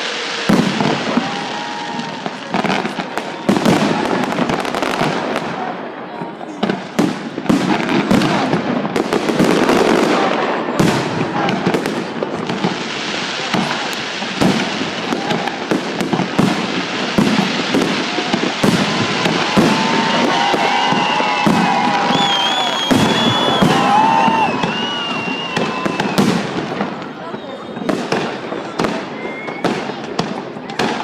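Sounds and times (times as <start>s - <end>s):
fireworks crackle: 0.0s - 31.0s
fireworks whistling: 0.0s - 31.0s
fireworks shells bursting: 11.0s - 27.1s.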